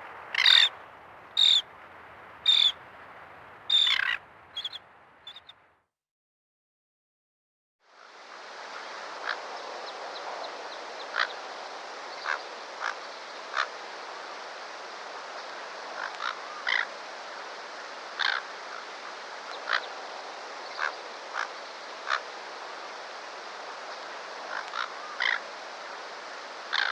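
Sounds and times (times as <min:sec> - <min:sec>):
steady background hiss: 0:00.0 - 0:05.5
sharp animal calls: 0:00.3 - 0:00.7, 0:01.4 - 0:01.6, 0:02.5 - 0:02.8, 0:03.7 - 0:05.5.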